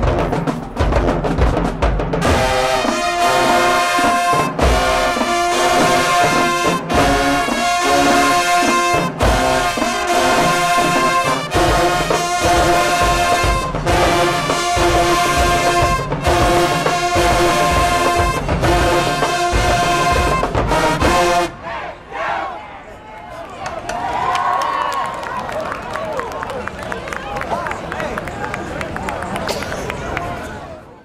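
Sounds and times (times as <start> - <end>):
marching drumline: 0.0 - 21.6
brass section chords: 0.0 - 22.0.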